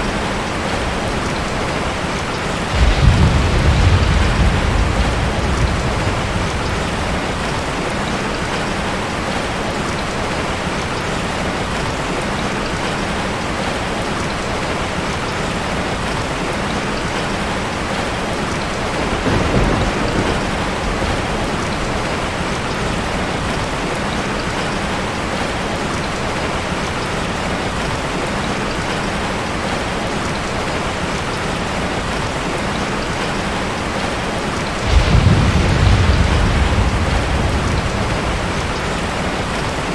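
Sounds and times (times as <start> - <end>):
thunder rumble: 0.0 - 9.6, 18.6 - 25.4, 34.8 - 39.9
heavy rain: 0.0 - 39.9.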